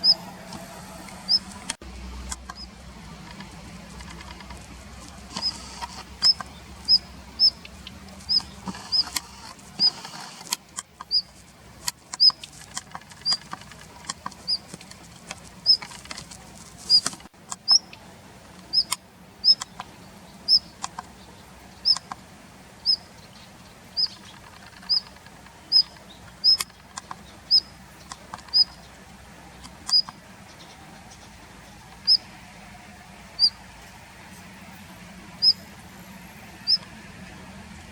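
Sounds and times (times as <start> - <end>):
faint clicks: 24.0 - 29.0, 29.6 - 32.2.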